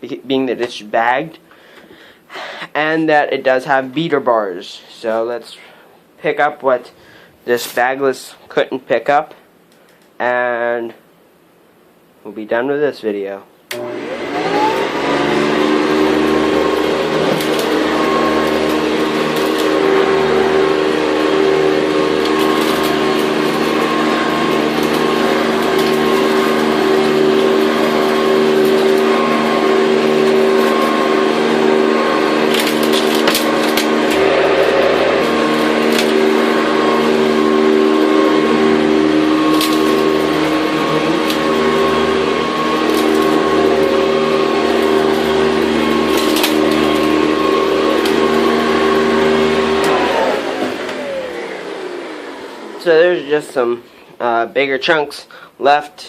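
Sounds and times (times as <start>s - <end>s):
vacuum cleaner running: 13.7s - 54.0s
debris rattling up vacuum: 13.8s - 51.9s.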